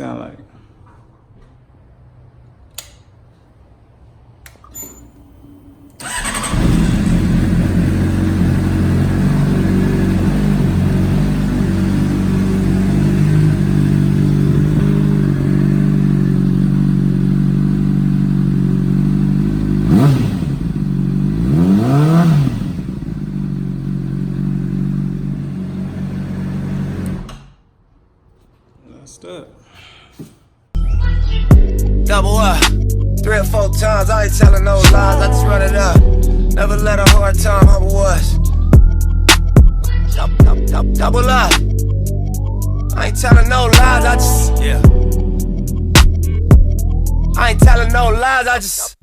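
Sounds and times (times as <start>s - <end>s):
motorcycle engine idling and revving: 6.0s - 27.3s, 34.3s - 39.8s, 43.3s - 47.8s.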